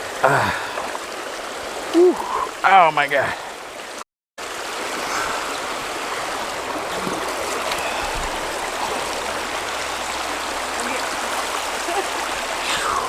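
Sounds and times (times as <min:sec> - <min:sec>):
stream water running: 0:00.0 - 0:13.0.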